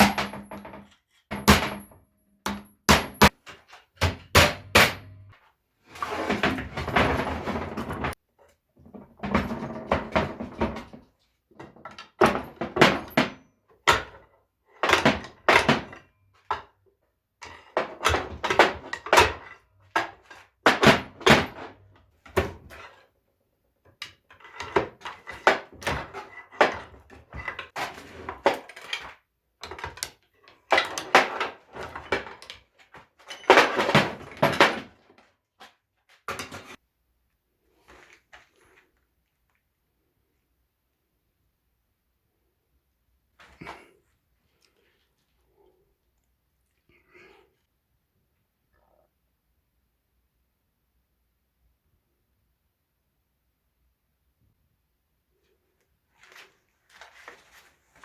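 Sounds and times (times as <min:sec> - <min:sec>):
metal parts clanking and scraping: 0:30.6 - 0:35.0.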